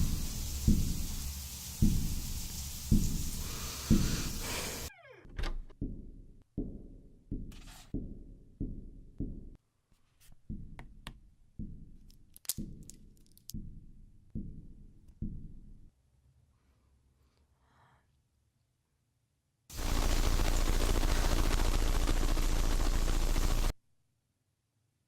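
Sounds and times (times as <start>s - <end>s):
steady hiss: 0.0s - 4.9s, 19.7s - 23.7s
dull low thuds: 5.7s - 9.6s, 13.6s - 15.8s.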